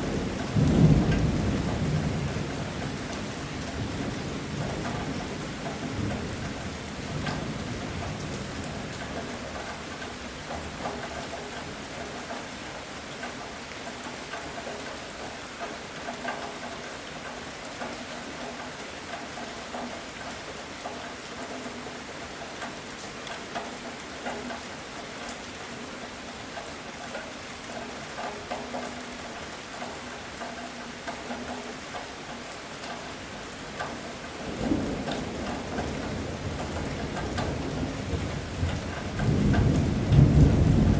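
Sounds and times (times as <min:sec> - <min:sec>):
heavy rain pattering: 0:00.0 - 0:40.9
thunder rumbling: 0:34.5 - 0:40.9.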